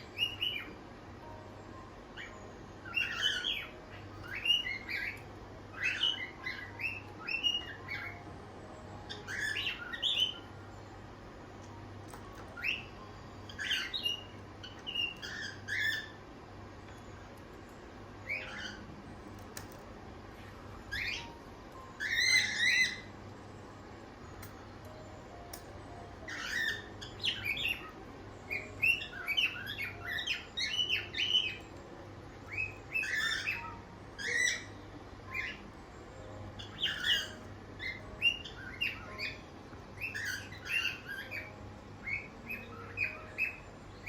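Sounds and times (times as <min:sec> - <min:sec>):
cockatiels chirping: 0:00.0 - 0:00.8, 0:02.2 - 0:08.4, 0:09.0 - 0:10.5, 0:12.1 - 0:16.2, 0:18.2 - 0:19.0, 0:20.4 - 0:23.1, 0:25.6 - 0:31.8, 0:32.4 - 0:43.7.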